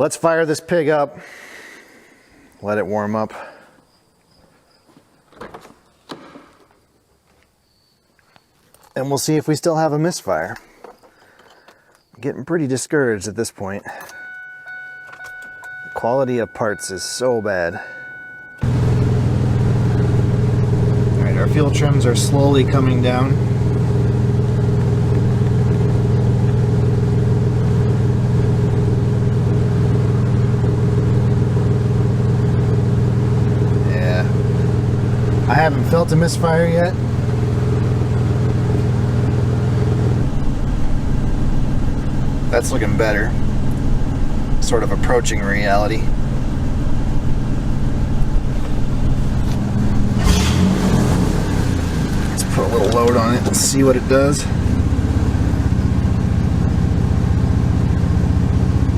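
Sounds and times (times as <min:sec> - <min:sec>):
truck engine running: 0:14.1 - 0:58.9.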